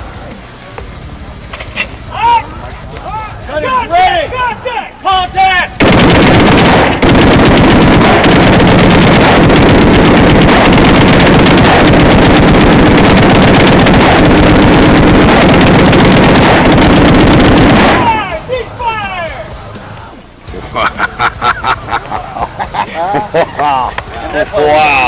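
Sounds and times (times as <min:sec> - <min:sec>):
heavy machine gun automatic fire: 0:05.8 - 0:18.5.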